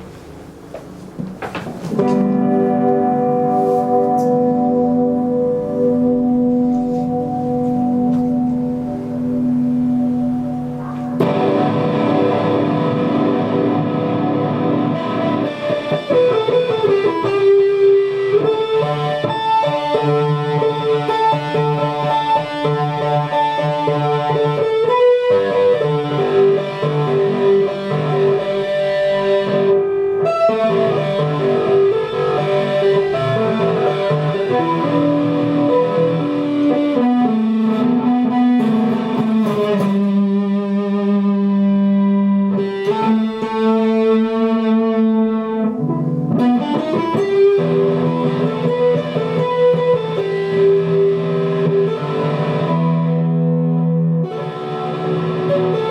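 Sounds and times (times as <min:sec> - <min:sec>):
guitar music: 0:00.0 - 0:55.9.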